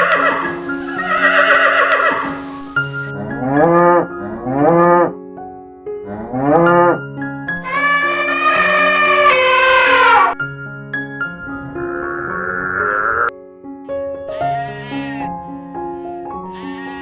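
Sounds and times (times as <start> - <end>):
background music: 0.0 - 17.0
cow mooing: 3.2 - 5.2, 6.1 - 7.0
bleating call: 16.5 - 17.0.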